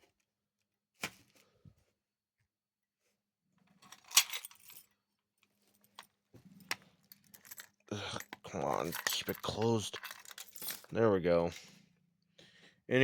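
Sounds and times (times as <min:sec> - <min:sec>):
jangling rattling clatter: 0:06.6 - 0:11.0.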